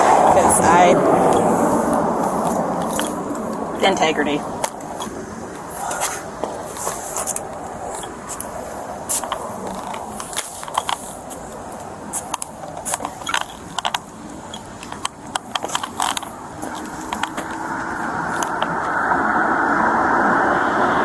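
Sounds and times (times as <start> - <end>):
roadside background noise: 0.0 - 21.0.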